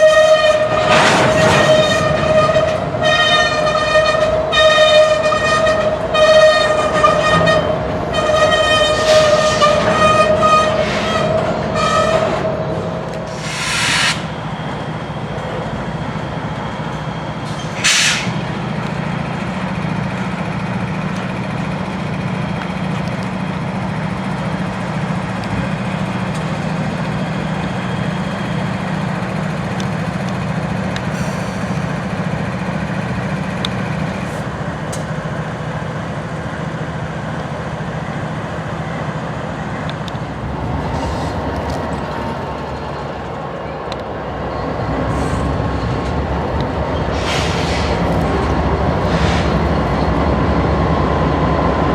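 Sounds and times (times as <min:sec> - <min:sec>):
locomotive horn blasts: 0:00.0 - 0:12.6
locomotive engine running: 0:00.0 - 0:51.9
short bursts of hiss: 0:13.3 - 0:14.4.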